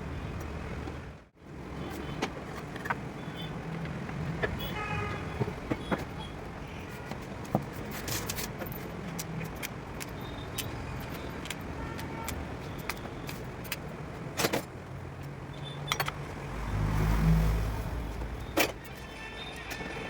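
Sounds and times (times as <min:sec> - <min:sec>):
vehicle engine rumbling: 0:07.3 - 0:20.0.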